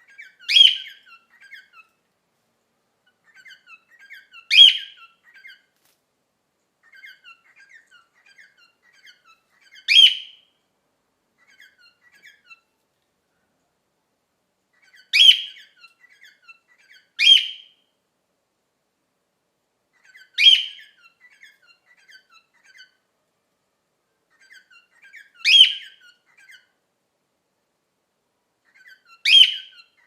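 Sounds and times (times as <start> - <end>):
cockatiel contact calls: 0.0 - 2.0, 3.0 - 6.0, 6.8 - 10.4, 11.4 - 12.8, 14.7 - 17.7, 20.0 - 23.1, 24.3 - 26.8, 28.6 - 30.0
soft bird chirps: 0.0 - 6.0, 6.6 - 10.7, 11.3 - 13.8, 14.6 - 18.0, 19.8 - 26.9, 28.6 - 30.0.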